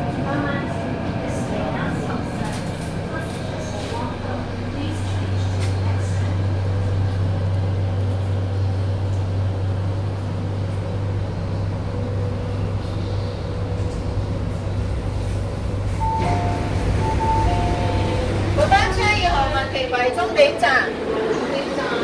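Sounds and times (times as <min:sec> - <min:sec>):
wheel-on-rail rumble: 0:00.0 - 0:22.0
two-note electronic tone: 0:16.0 - 0:18.3.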